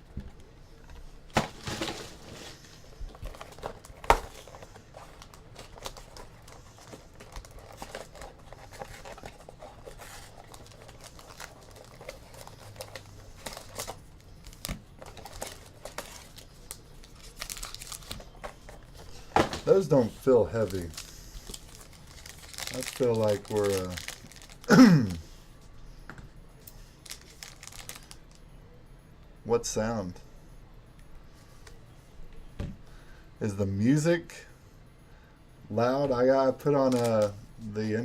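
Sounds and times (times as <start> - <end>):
plastic wrapping crinkling: 1.4 - 19.1, 19.7 - 25.2, 27.0 - 28.4, 36.8 - 37.4.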